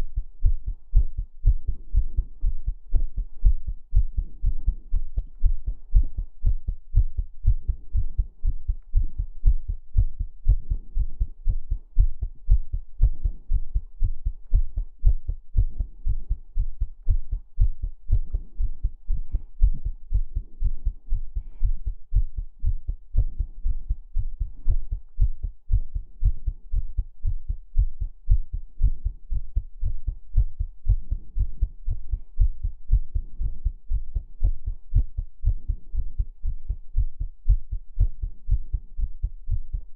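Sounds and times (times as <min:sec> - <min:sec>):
muffled heartbeat thumps: 0:00.0 - 0:39.9.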